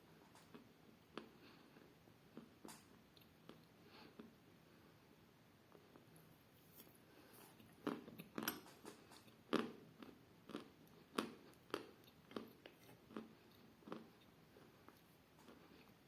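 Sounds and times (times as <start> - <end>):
person chewing chalk: 9.2 - 16.0.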